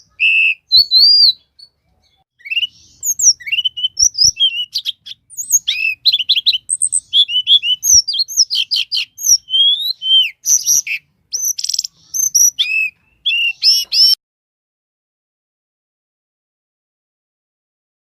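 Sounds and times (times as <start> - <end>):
songbird singing: 0.0 - 14.2.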